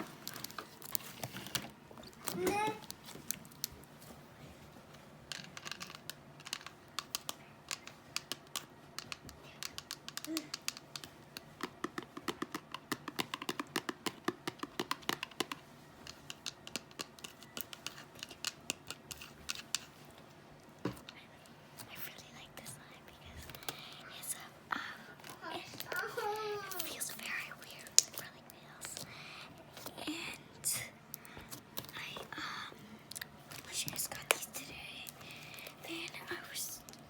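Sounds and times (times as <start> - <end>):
nails clicking and tapping on slime: 5.6 - 19.9.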